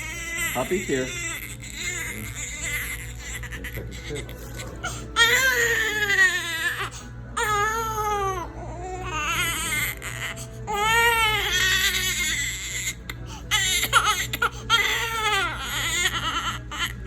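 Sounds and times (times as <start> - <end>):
newborn baby crying: 0.0 - 17.0.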